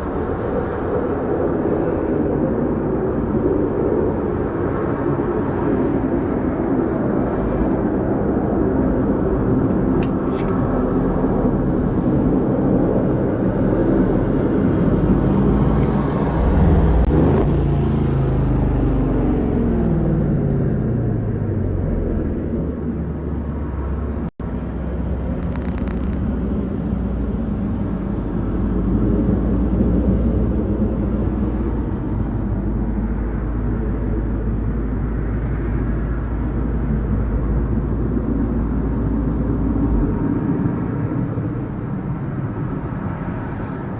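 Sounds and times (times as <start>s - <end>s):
low traffic rumble: 0.0s - 43.9s
vehicle passing: 14.0s - 43.9s.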